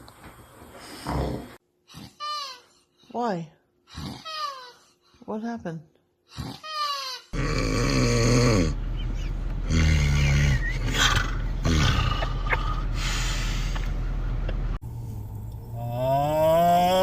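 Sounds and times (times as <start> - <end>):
person snoring: 7.4 - 8.8, 9.7 - 13.6, 15.1 - 17.0
low hum: 7.4 - 17.0.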